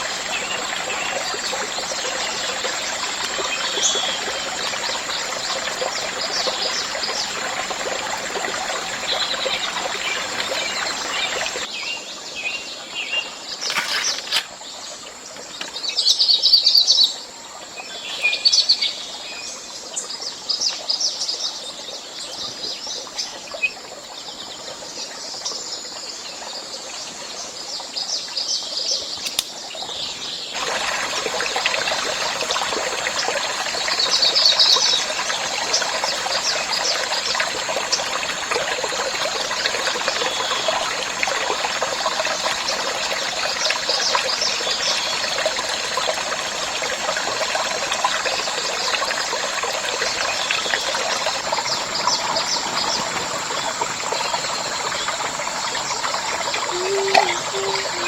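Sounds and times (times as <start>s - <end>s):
running water rushing: 0.0s - 18.9s, 28.8s - 58.0s
birds chirping: 56.6s - 58.0s.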